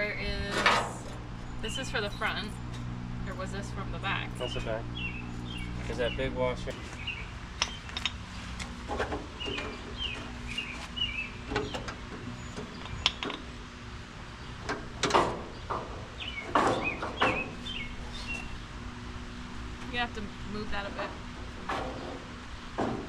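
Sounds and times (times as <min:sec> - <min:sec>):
birds chirping: 0:00.0 - 0:23.0
steady low hum: 0:00.0 - 0:23.0
hand tools knocking and clinking: 0:12.7 - 0:13.5.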